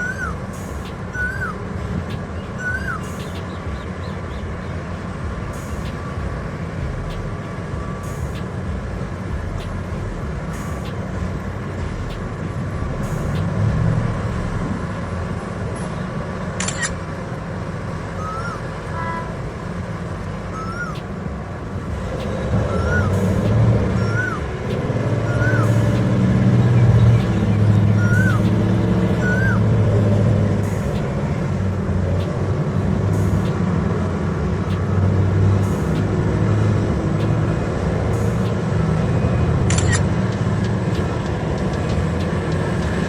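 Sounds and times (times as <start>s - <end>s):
short high chirp: 0.0s - 4.8s, 27.1s - 28.6s
heavy machinery engine rumble: 0.0s - 43.0s.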